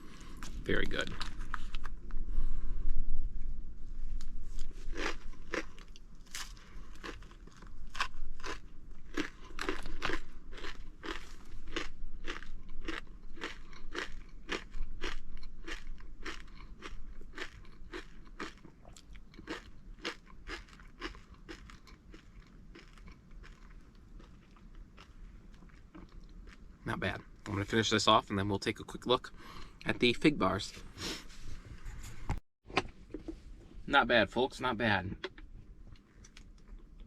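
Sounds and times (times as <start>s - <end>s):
close-up crunchy chewing: 4.2s - 27.6s, 35.2s - 37.0s.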